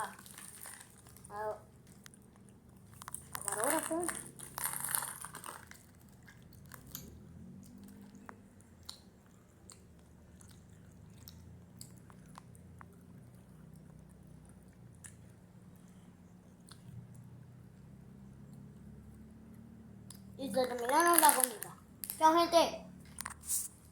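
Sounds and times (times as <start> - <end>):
person chewing candy: 0.0 - 18.7
wet mouth clicks: 6.9 - 15.2.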